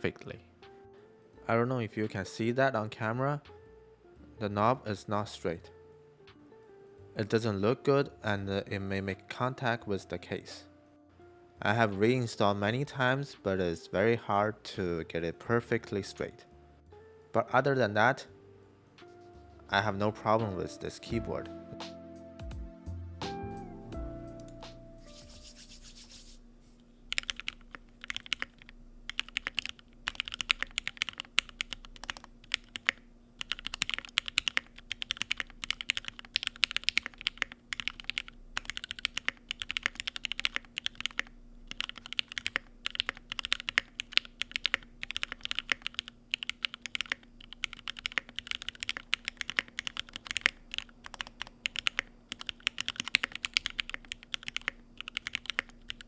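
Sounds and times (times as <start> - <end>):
mechanical keyboard typing: 27.1 - 56.0.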